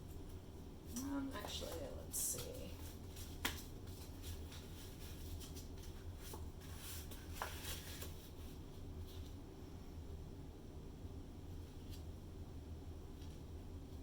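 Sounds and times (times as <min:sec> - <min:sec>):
low steady hum: 0:00.0 - 0:14.0
faint scraping and handling: 0:00.9 - 0:09.4.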